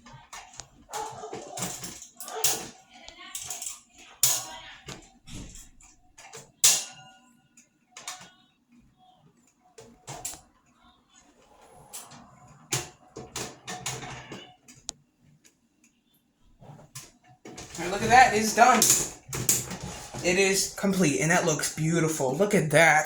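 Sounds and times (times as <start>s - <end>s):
fan parts clicking and knocking: 0.0s - 7.0s, 16.8s - 23.0s
handling noise: 16.5s - 23.0s.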